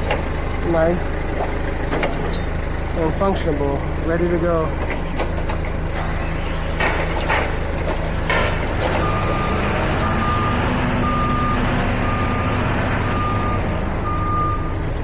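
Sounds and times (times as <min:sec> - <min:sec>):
forklift engine running: 0:00.0 - 0:15.0
reverse alarm beeping: 0:09.0 - 0:14.7.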